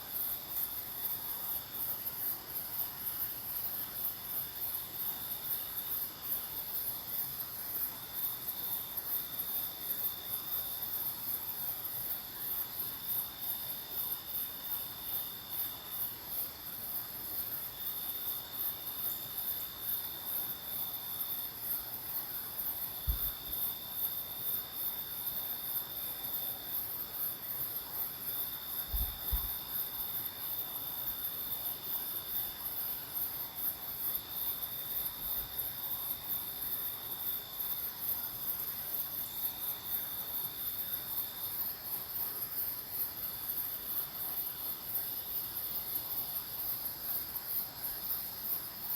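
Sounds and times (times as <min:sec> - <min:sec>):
microphone bump thump: 0:23.1 - 0:23.4, 0:28.9 - 0:29.5.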